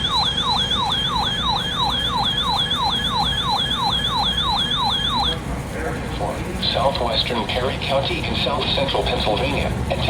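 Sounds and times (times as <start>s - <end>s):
electronic siren alert tone: 0.0s - 5.4s.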